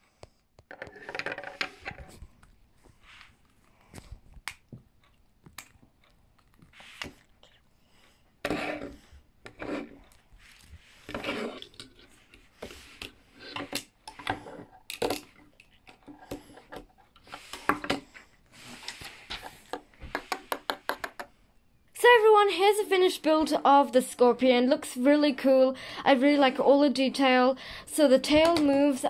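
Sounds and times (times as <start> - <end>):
plastic bricks scraping and clicking: 0.6 - 2.6.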